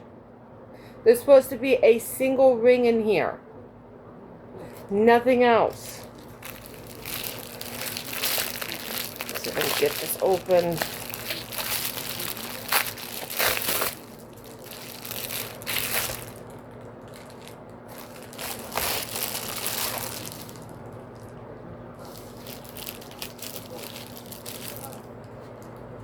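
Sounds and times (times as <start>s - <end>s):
steady low hum: 0.0s - 26.0s
packaging crinkling: 5.7s - 21.4s, 22.0s - 25.9s.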